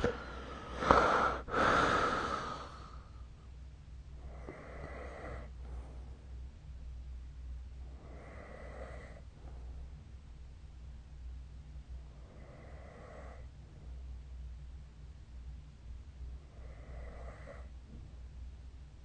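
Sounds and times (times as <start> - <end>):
person snoring: 0.0 - 3.0, 4.3 - 5.5, 8.0 - 9.2, 12.4 - 13.4, 16.6 - 17.7.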